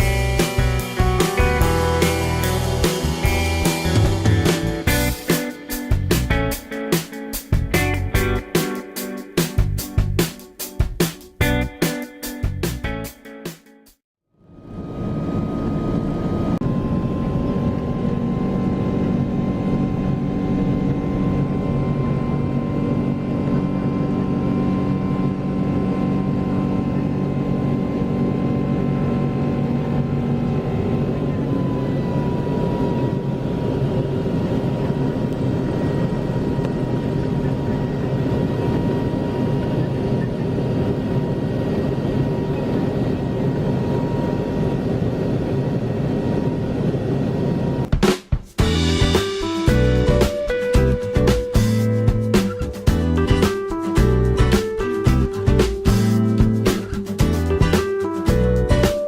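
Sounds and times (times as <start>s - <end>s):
jet engines rushing and whining: 14.4s - 47.9s.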